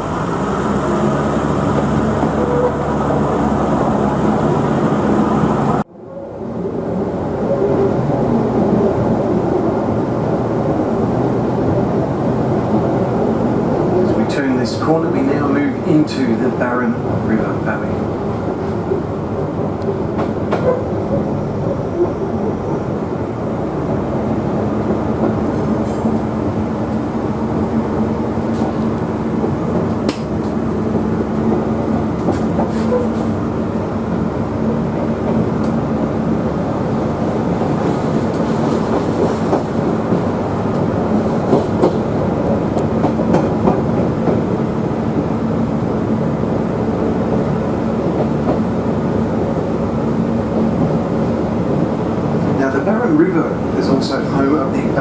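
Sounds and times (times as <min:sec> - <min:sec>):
diesel rail engine drone: 0:00.0 - 0:55.0
train wheels clicking over rail joints: 0:28.4 - 0:33.4, 0:37.6 - 0:45.4.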